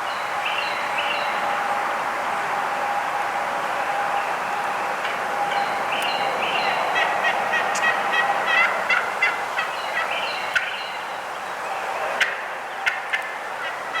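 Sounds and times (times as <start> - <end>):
wild turkeys yelping and clucking: 6.5 - 10.9.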